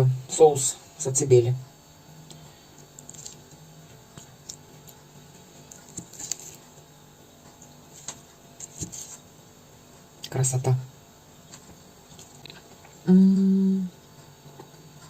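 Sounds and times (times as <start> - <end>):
faint low hum: 0.0 - 15.0.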